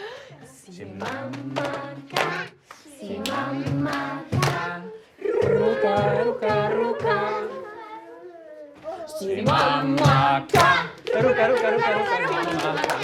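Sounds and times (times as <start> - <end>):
group of voices singing: 0.4 - 8.0, 9.0 - 13.0
hand claps: 1.0 - 4.6, 9.5 - 13.0.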